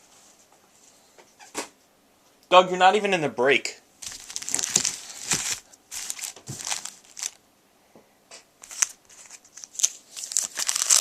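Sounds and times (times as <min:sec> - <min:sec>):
cards being handled: 0:04.0 - 0:07.4, 0:08.6 - 0:11.0
wrappers crinkling: 0:04.0 - 0:07.4, 0:08.6 - 0:11.0.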